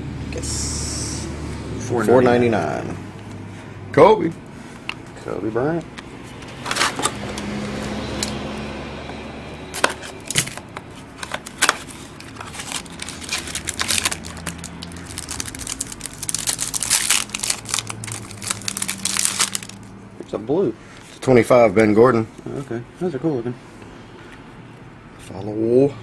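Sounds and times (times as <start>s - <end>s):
cards being handled: 9.7s - 19.9s
card wrapper crinkling: 9.8s - 19.9s.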